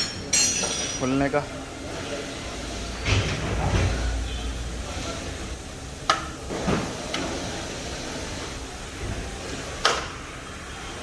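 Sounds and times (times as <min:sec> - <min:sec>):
metallic tool clanks: 0:00.0 - 0:01.3.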